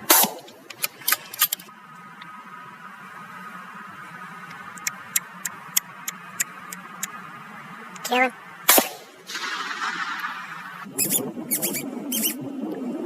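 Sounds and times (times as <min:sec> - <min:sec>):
rapid gunshots: 0:08.7 - 0:10.9.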